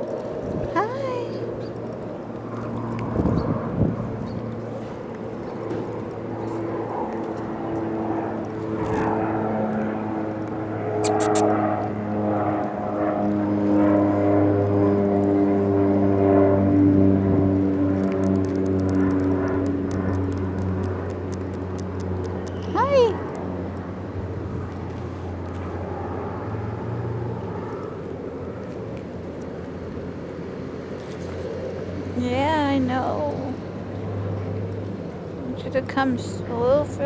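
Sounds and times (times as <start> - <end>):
engine drone: 0.1 - 37.0
short clicks: 11.0 - 11.5.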